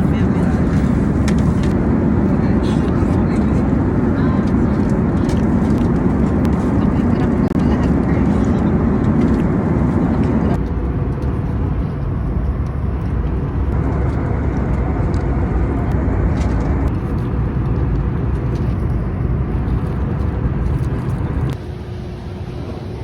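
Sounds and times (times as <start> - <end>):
jet airliner cabin roar: 0.0 - 23.0.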